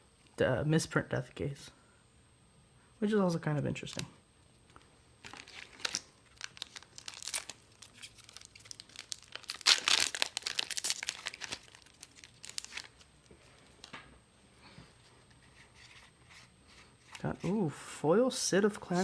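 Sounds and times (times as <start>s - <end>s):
foil wrapper crinkling and tearing: 5.2s - 13.9s.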